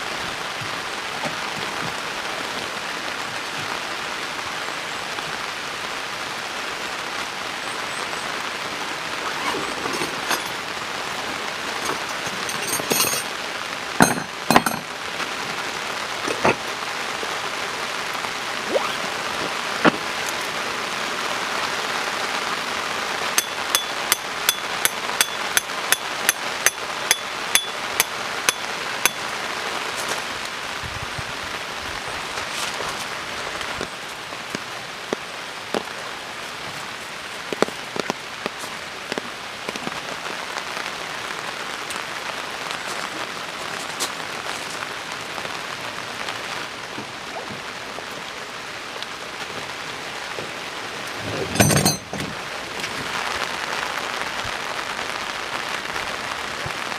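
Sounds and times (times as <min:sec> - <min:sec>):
heavy rain: 0:00.0 - 0:56.9
scattered knocks and clinks: 0:09.8 - 0:10.6, 0:11.8 - 0:13.3, 0:14.0 - 0:14.9, 0:23.4 - 0:29.2, 0:51.5 - 0:52.2
sharp ringing metal strikes: 0:23.4 - 0:29.2.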